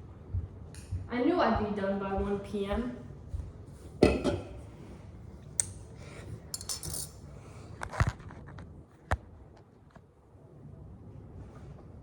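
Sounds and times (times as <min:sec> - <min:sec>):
cutlery clinking against a dish: 0:06.6 - 0:07.2.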